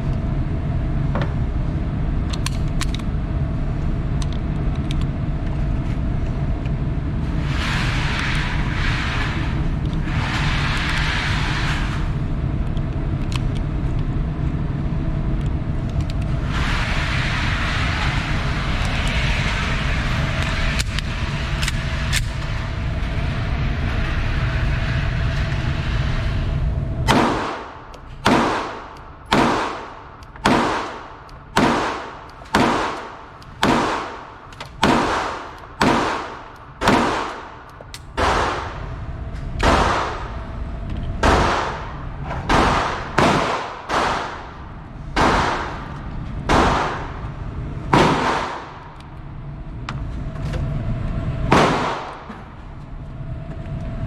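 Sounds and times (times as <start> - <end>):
steady rumbling: 0.0 - 54.0
gunshots: 27.1 - 37.6, 38.2 - 38.9, 39.6 - 40.4, 41.2 - 44.5, 45.2 - 47.2, 47.9 - 48.8, 51.5 - 52.3.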